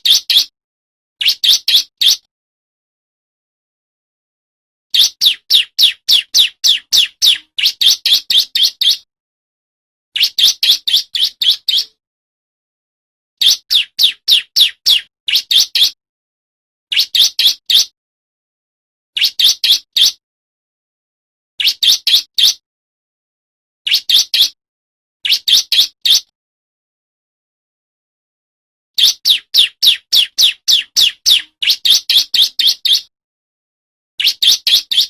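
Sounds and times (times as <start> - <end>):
bird singing sharp high chirps: 0.0 - 0.5, 1.2 - 2.3, 4.9 - 9.1, 10.2 - 12.0, 13.4 - 16.0, 16.9 - 17.9, 19.2 - 20.2, 21.6 - 22.6, 23.9 - 24.6, 25.2 - 26.3, 29.0 - 33.1, 34.2 - 35.0.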